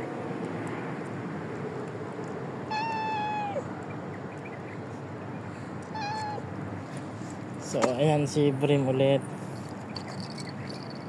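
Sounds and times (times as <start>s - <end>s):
steady background noise: 0.0s - 11.0s
cat meowing: 2.7s - 3.7s, 5.9s - 6.4s.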